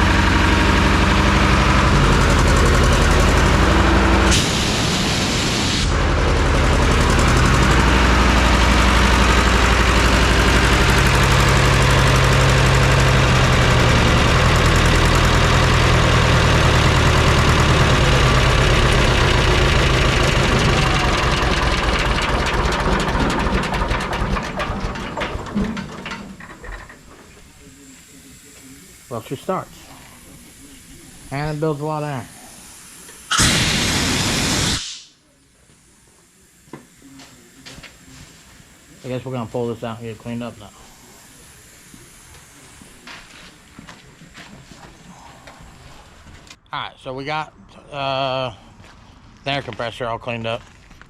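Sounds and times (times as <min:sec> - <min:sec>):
diesel engine running: 0:00.0 - 0:34.7.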